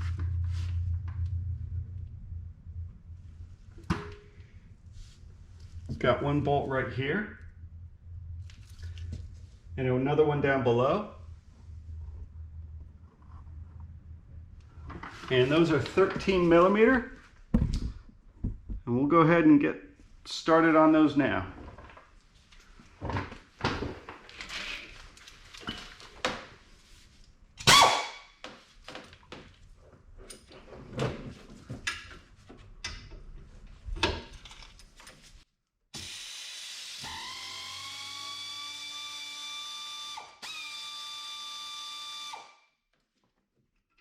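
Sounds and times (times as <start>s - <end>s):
power tool whine: 36.0s - 42.6s.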